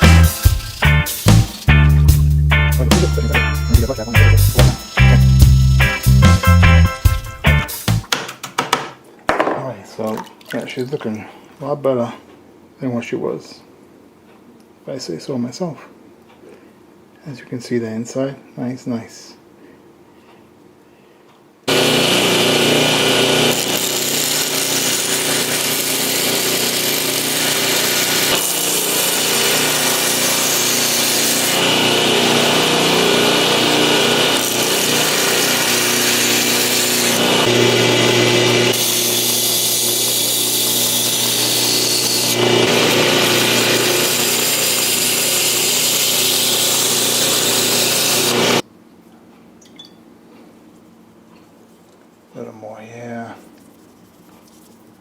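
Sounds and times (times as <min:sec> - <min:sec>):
electric power tool running: 0:21.7 - 0:48.6.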